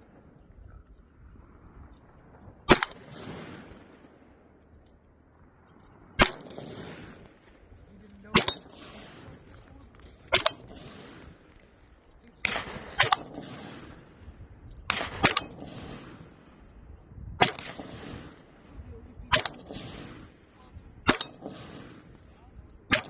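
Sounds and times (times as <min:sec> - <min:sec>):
gunshots echoing: 0:02.5 - 0:04.7, 0:06.2 - 0:16.6, 0:17.4 - 0:23.0.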